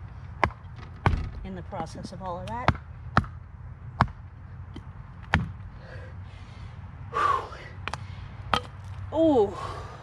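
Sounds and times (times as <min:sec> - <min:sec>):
sledgehammer pounding on wood: 0:00.4 - 0:01.5.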